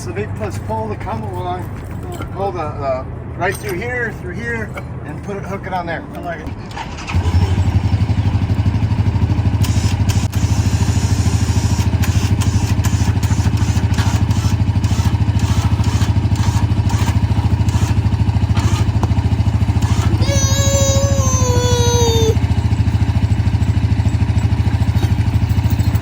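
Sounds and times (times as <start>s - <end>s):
vehicle engine running: 0.0s - 26.0s.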